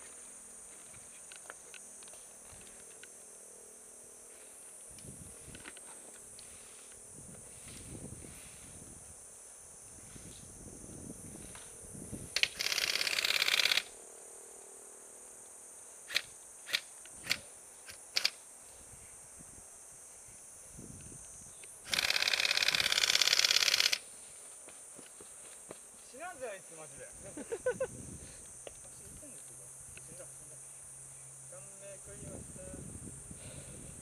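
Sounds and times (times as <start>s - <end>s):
insects buzzing: 0.0s - 34.0s
airsoft gun firing rapid bursts: 12.4s - 13.9s, 21.9s - 24.0s.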